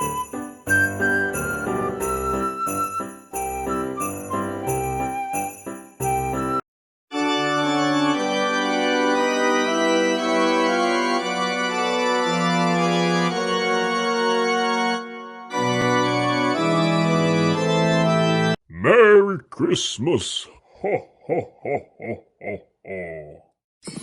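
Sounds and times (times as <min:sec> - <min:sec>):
organ chords: 0:07.2 - 0:18.6.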